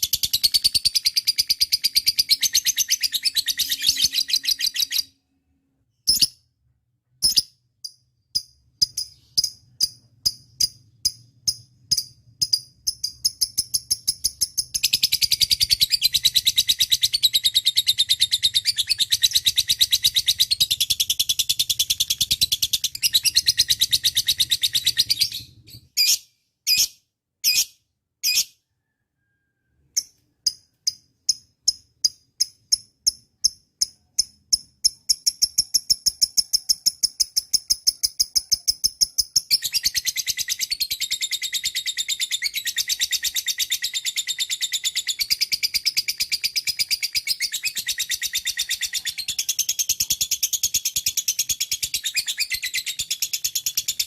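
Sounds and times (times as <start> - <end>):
bird chirps: 0.0 - 54.0.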